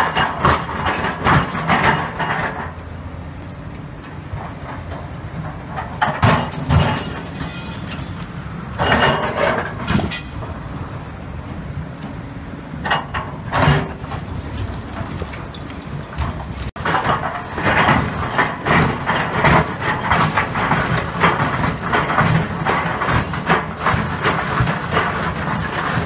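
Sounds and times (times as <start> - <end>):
excavator engine running: 0.0 - 26.0
concrete debris crashing: 13.6 - 26.0.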